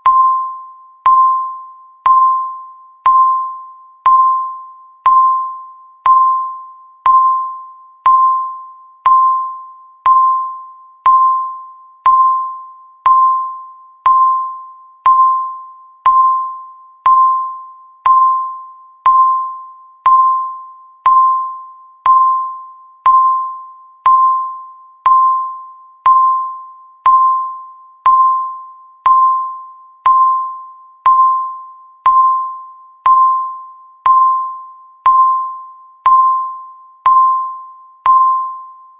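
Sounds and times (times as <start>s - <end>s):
electronic timer ticks: 11.0s - 13.4s, 27.0s - 38.5s.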